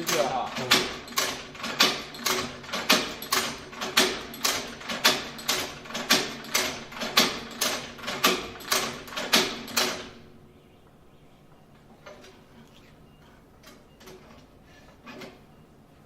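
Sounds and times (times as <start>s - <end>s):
leather stitching machine clacking: 0.0s - 10.2s.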